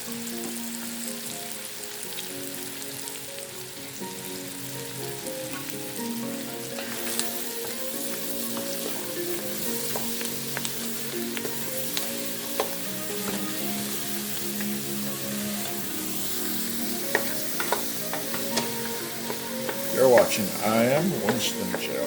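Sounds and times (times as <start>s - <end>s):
food sizzling in a pan: 0.0s - 22.0s
utensil clicking on pan: 6.7s - 14.8s, 15.6s - 22.0s.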